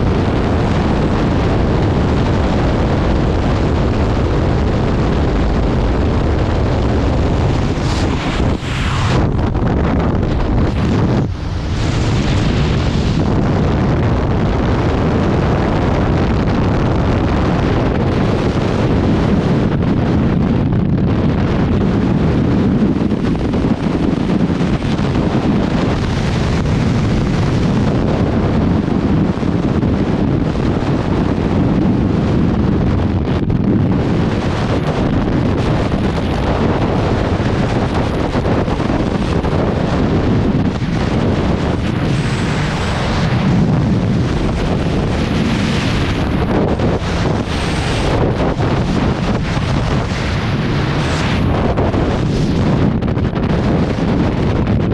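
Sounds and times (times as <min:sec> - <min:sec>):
strong wind buffeting microphone: 0:00.0 - 0:54.9.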